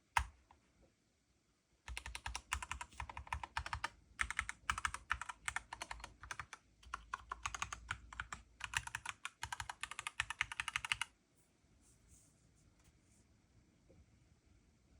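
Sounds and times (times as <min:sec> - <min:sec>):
fast mechanical keyboard typing: 0:01.9 - 0:11.1.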